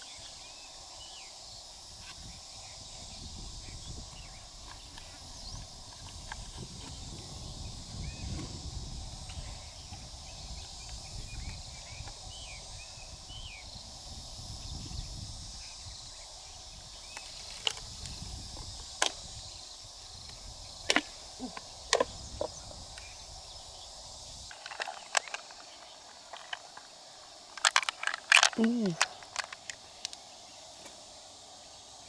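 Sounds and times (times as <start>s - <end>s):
outdoor hiss: 0.0s - 32.0s
mussel shells clicking: 24.5s - 30.2s.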